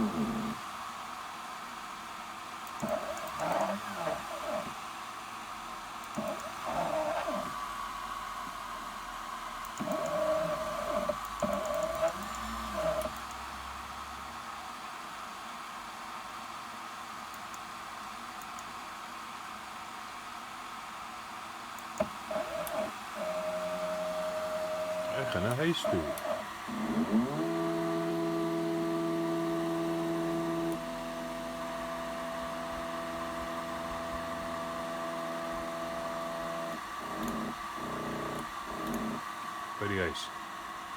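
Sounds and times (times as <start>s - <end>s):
stepper motors whining: 22.3s - 39.2s.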